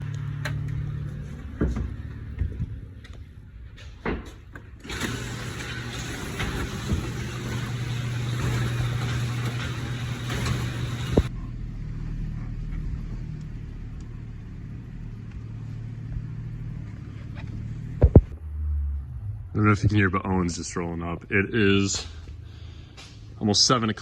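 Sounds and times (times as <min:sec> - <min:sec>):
car engine humming: 0:05.0 - 0:23.4.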